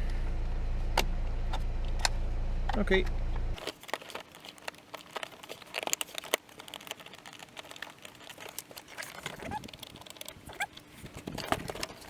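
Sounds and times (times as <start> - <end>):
parts clicking and crinkling: 3.6 - 12.0.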